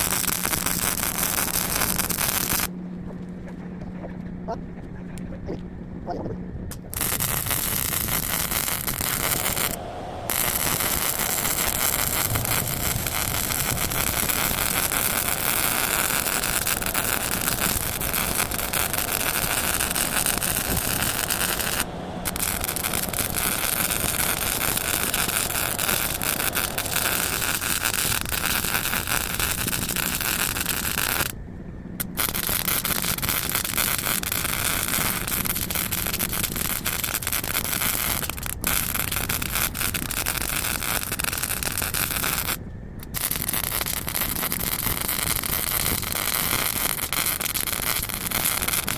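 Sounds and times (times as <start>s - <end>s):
low machine hum: 9.0s - 29.6s.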